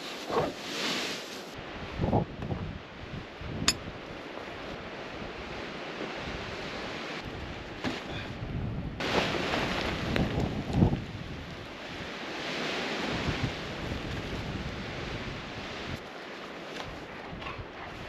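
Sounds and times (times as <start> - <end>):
storm wind buffeting microphone: 1.6 - 16.0.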